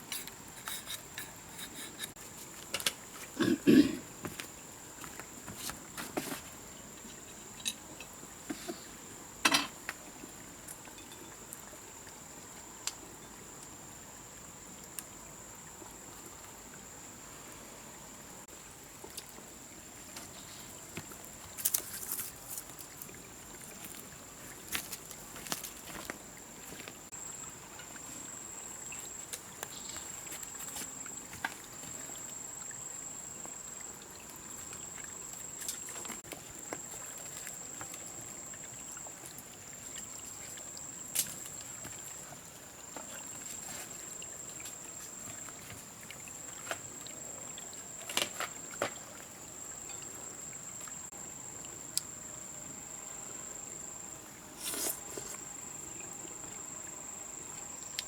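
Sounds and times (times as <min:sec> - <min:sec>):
insects droning: 0:00.0 - 0:58.0.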